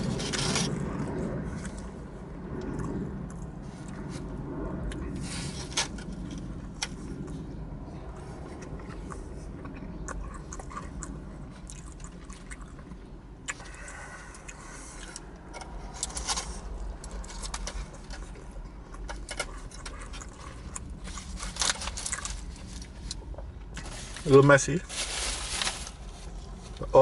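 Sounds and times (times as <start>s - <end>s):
traffic rumble: 0.0s - 27.0s
wet chewing: 6.9s - 23.9s.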